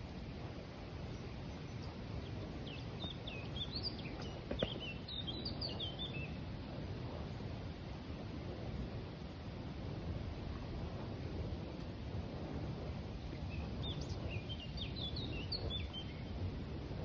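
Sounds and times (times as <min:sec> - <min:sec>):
outdoor background noise: 0:00.0 - 0:17.0
small bird chirping: 0:01.1 - 0:06.4, 0:13.4 - 0:16.4.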